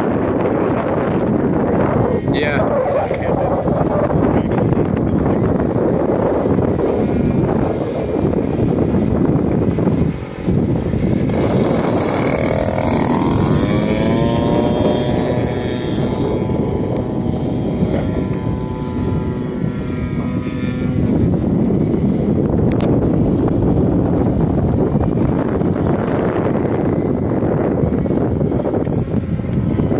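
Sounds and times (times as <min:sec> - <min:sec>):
model plane engine buzzing: 0:00.0 - 0:29.9
wind rumble on microphone: 0:00.0 - 0:29.9.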